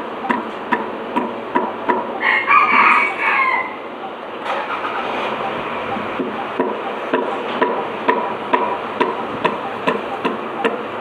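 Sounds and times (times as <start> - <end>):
wind noise: 5.2 - 6.8, 8.6 - 10.5
sharp knocks: 6.2 - 10.8.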